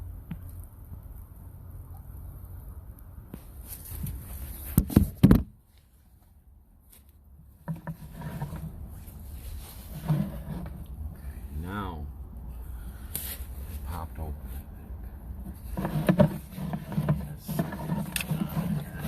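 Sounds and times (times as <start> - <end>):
handling and scraping noises: 3.3 - 12.0, 12.6 - 19.0
rustling: 3.4 - 11.5, 12.6 - 19.0
bump: 15.3 - 19.0.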